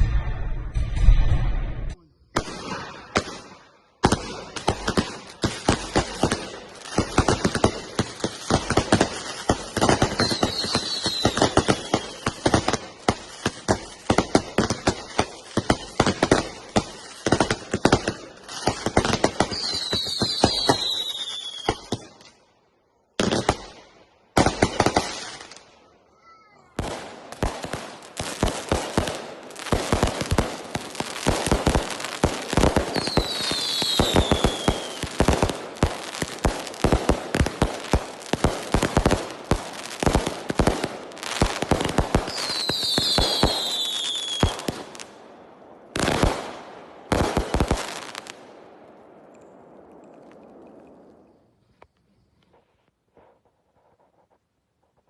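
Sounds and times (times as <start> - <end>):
firework barrage: 0.0 - 22.3, 26.3 - 51.6
falling firework whistle: 10.0 - 12.5, 19.4 - 22.0, 32.6 - 35.3, 42.2 - 44.7.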